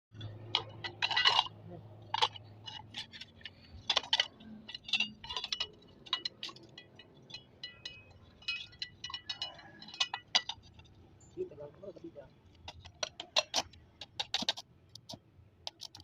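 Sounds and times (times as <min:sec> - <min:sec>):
metal clinks and taps: 0:00.2 - 0:11.0.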